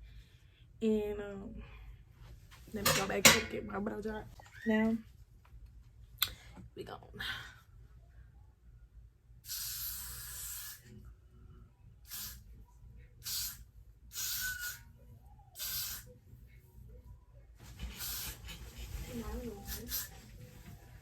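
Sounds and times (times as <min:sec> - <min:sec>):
aerosol spray can hissing: 0:09.5 - 0:10.9, 0:12.1 - 0:12.5, 0:13.2 - 0:14.8, 0:15.6 - 0:16.1, 0:17.8 - 0:20.3.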